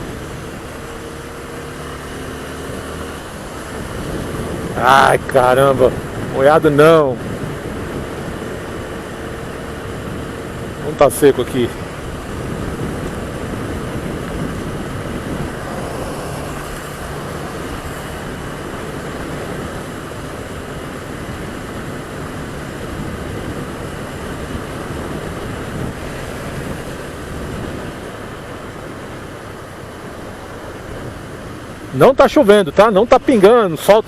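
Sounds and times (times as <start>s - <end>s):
motorcycle engine running: 0.0s - 32.0s
wind noise: 0.0s - 32.0s
tyres on wet pavement: 0.0s - 34.0s.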